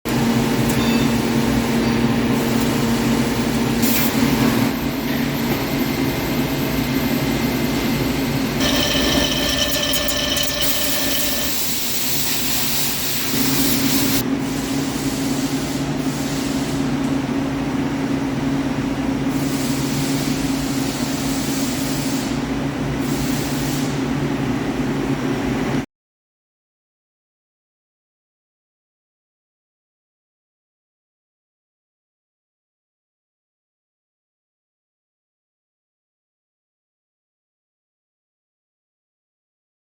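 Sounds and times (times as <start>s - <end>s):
high machine whine: 0.1s - 14.2s
lathe humming: 6.0s - 14.2s.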